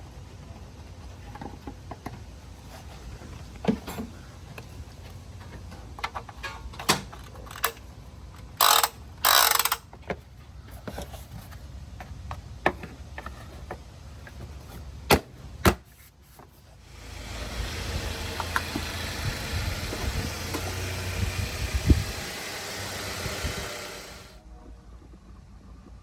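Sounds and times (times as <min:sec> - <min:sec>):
scraping rustles: 0:00.0 - 0:08.6, 0:09.9 - 0:16.8
tool clicks and knocks: 0:08.6 - 0:10.2, 0:18.3 - 0:19.1.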